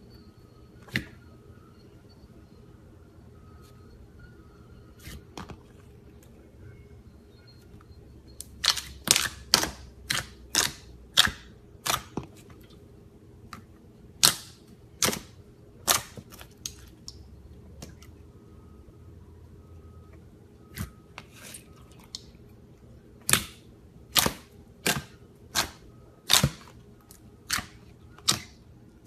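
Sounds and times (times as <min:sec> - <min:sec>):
slime popping and clicking: 0:23.2 - 0:28.6.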